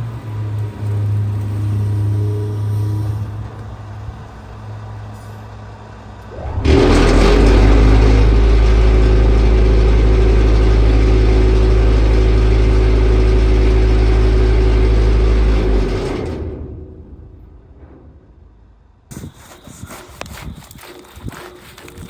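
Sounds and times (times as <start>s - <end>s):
diesel truck engine revving: 0.0s - 16.4s.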